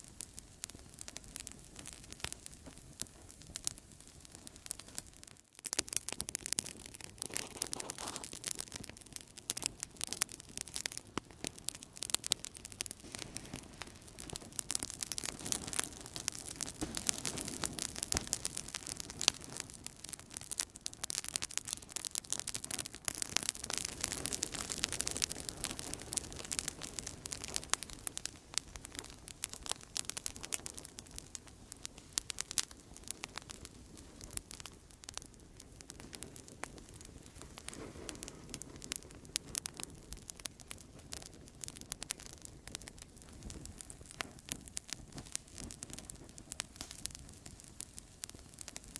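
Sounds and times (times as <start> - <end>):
campfire crackling: 0.0 - 48.9
low rush of burning: 11.6 - 20.2, 22.8 - 39.8.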